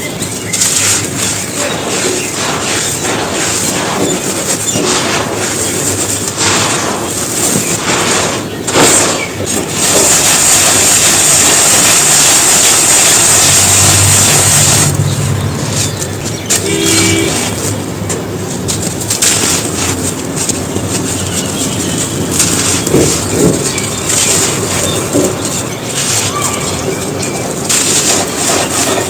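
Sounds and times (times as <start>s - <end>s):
dry bricks crushed and crumbling: 0.0s - 29.0s.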